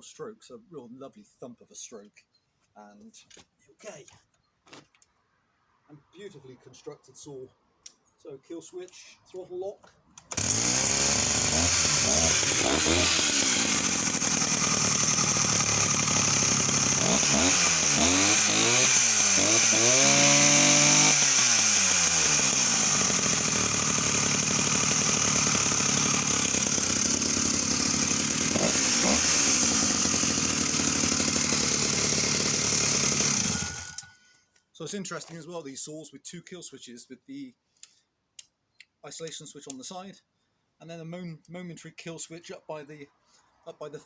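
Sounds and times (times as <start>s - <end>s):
chainsaw engine revving and idling: 10.3s - 34.1s.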